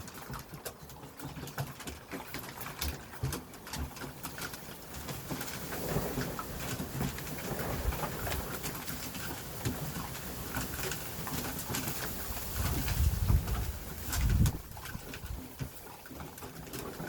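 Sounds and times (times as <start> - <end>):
puppies crunching dry kibble: 0.0 - 17.0
low bumps: 12.5 - 15.6.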